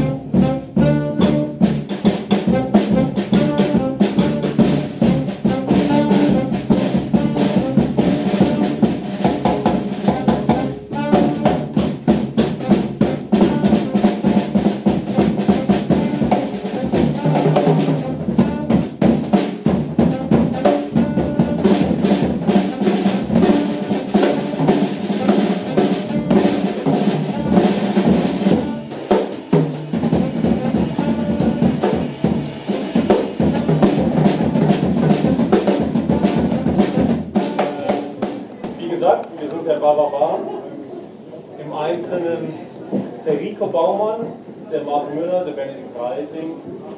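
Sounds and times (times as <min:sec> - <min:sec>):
saxophone: 0:00.0 - 0:09.0, 0:09.6 - 0:19.1, 0:19.7 - 0:38.3
busy drum kit: 0:00.0 - 0:39.9.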